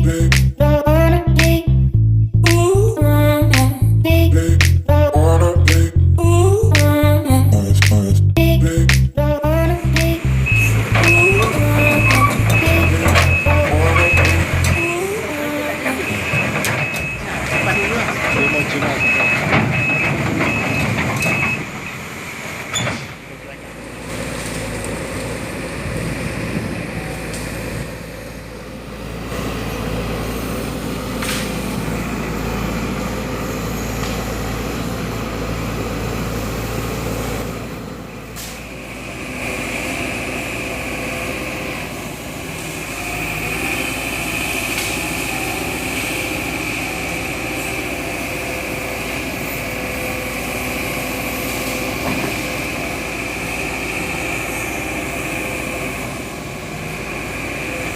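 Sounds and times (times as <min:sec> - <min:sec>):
high whine: 0:00.0 - 0:18.0
excavator diesel engine droning: 0:00.0 - 0:57.9.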